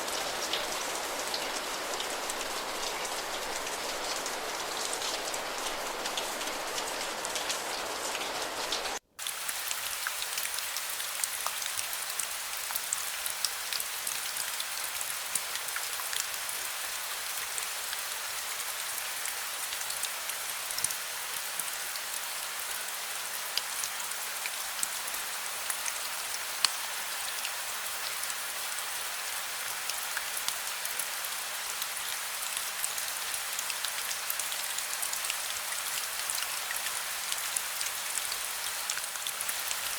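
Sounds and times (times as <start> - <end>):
steady rain falling: 0.0 - 39.9.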